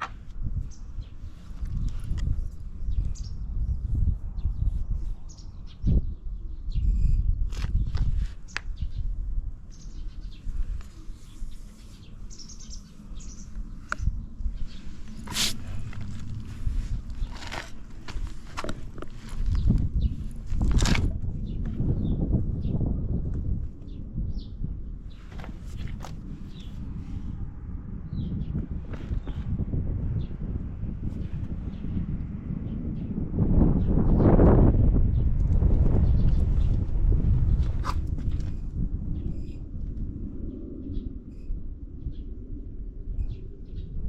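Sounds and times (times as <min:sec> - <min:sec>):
small birds chirping: 0:00.0 - 0:22.9, 0:23.8 - 0:27.0
low rumble: 0:08.8 - 0:44.0.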